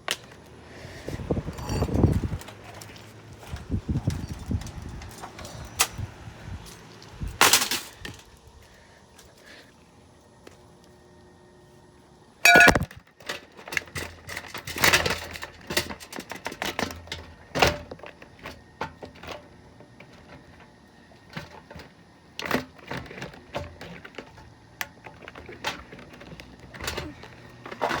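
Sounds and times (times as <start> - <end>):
plastic fan being smashed: 7.4 - 8.2.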